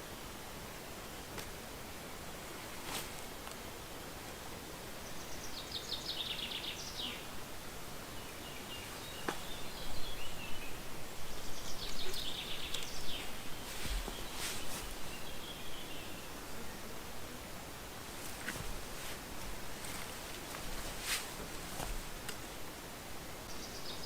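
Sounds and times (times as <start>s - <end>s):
outdoor ambience hiss: 0.0s - 24.0s
songbird singing: 4.8s - 17.4s, 22.1s - 24.0s.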